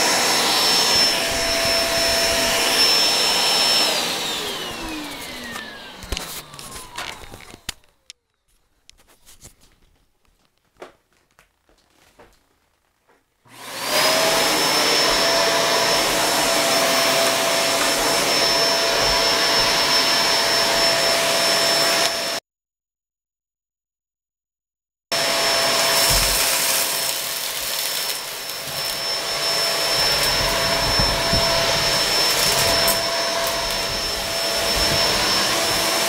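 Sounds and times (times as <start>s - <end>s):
vacuum cleaner motor whine: 0.0s - 8.0s, 13.5s - 22.4s, 25.1s - 36.0s.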